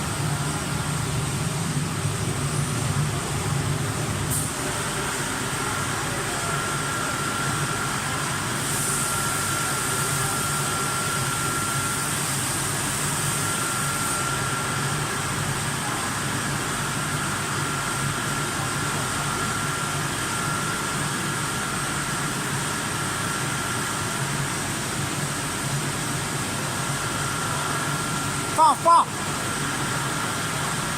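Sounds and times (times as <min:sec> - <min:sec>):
glass washing machine humming: 0:00.0 - 0:30.9.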